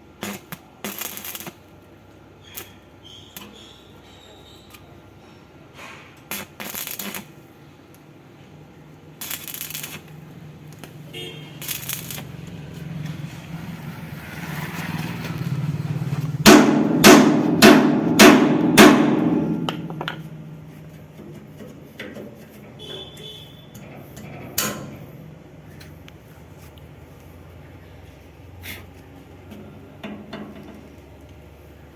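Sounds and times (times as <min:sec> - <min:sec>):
low steady hum: 0:15.9 - 0:28.5
hammer striking metal: 0:16.4 - 0:20.7.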